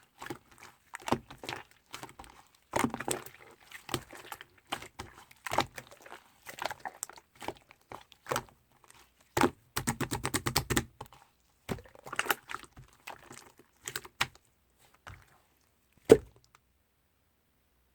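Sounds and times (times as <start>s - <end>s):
slime squished by hand: 0.0s - 16.6s.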